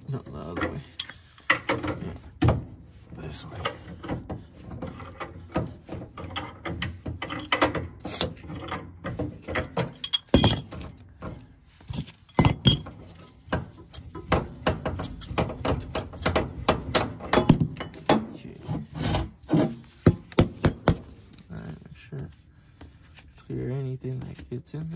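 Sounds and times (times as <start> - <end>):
pipe wrench clinking on metal: 0.2 - 2.4, 3.6 - 18.4.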